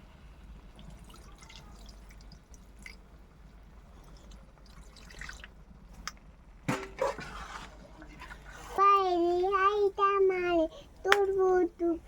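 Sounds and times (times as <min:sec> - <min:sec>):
faint drips: 0:00.4 - 0:06.6
gravy bubbling: 0:00.4 - 0:09.5.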